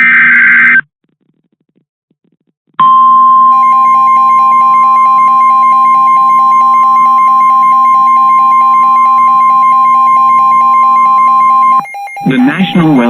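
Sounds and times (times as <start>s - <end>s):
rapid pulsing beep: 2.8s - 13.0s
steady high beep: 2.8s - 13.0s.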